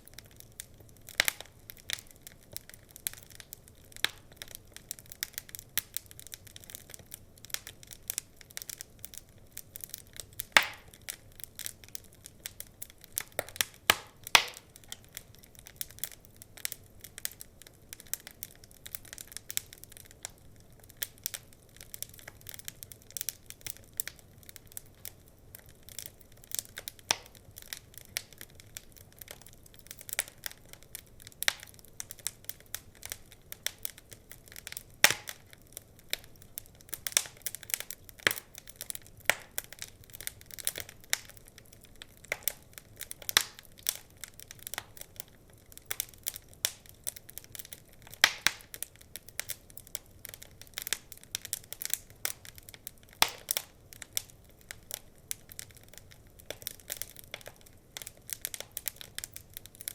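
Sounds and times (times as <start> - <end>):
faint steady hiss: 0.0 - 59.9
wood fire crackling and popping: 0.0 - 59.9.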